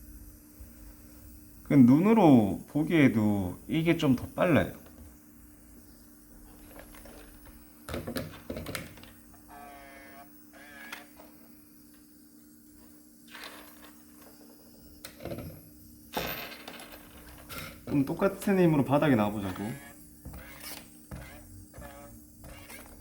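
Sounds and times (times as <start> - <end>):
electric nail drills humming: 8.0 - 15.2, 17.9 - 23.0.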